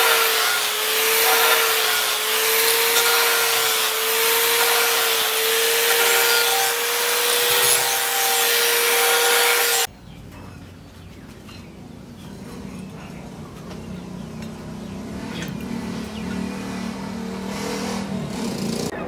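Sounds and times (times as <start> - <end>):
power tool motor whine: 0.0 - 9.9.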